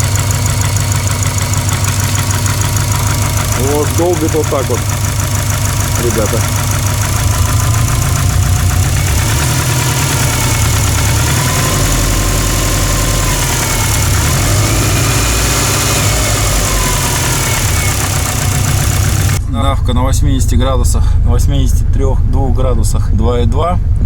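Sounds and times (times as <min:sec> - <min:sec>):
rhythmic hammering engine knock: 0:00.0 - 0:19.5
car engine idling: 0:00.0 - 0:24.0.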